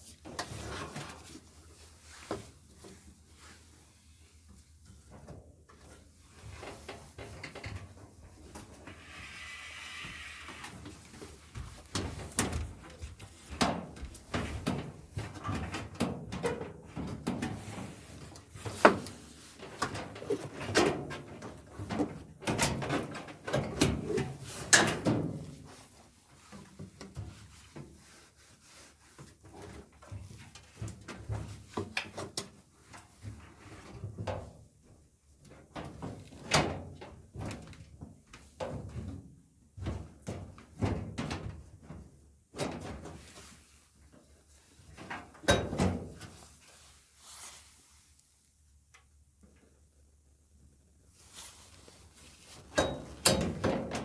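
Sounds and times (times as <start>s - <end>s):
dryer parts clicking and clunking: 6.5s - 8.6s, 11.8s - 25.6s, 45.0s - 46.3s, 52.7s - 54.0s.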